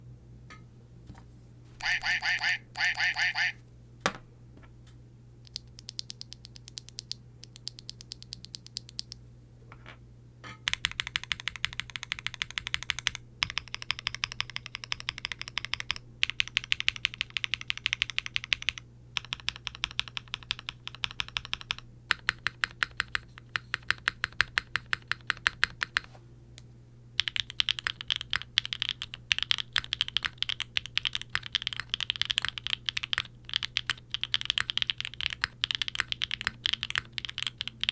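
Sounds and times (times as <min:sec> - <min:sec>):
mechanical keyboard typing: 0:05.4 - 0:09.2, 0:10.6 - 0:26.1, 0:27.2 - 0:37.9.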